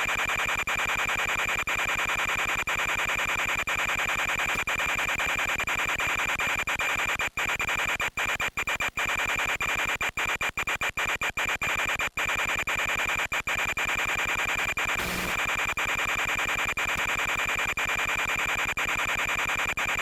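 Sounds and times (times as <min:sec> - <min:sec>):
radio static hiss: 0:09.5 - 0:20.0
steady high whine: 0:14.6 - 0:17.1.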